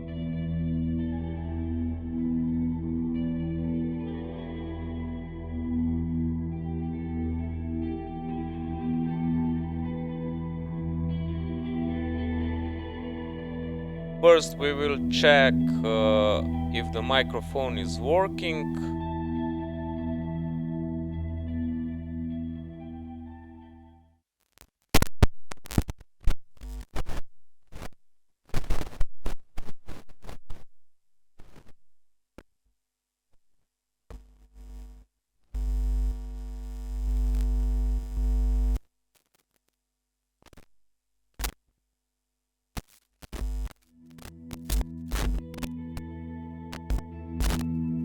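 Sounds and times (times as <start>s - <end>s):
microphone crackles and clicks: 24.5s - 30.8s, 31.4s - 31.8s, 42.7s - 46.1s, 46.7s - 48.0s.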